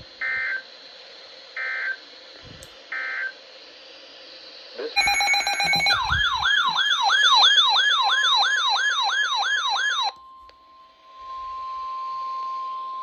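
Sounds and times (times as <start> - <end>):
buzzy data tones: 4.8 - 8.0
steady beep tone: 5.0 - 6.8
siren-like sweeping tone: 5.0 - 13.0.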